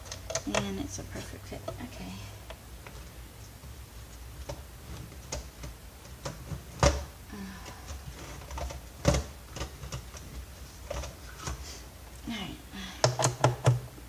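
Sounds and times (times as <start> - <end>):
plastic parts being handled: 2.4 - 11.9.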